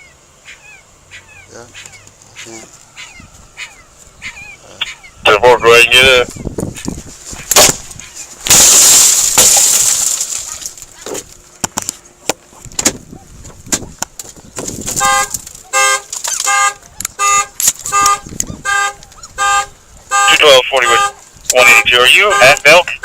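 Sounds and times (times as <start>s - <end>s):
glass shattering: 8.5s - 10.9s
car alarm horn honking: 15.0s - 23.0s.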